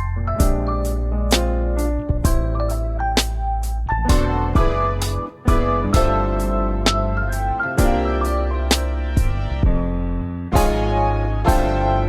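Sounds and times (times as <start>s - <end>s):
background music with drums: 4.1s - 8.1s.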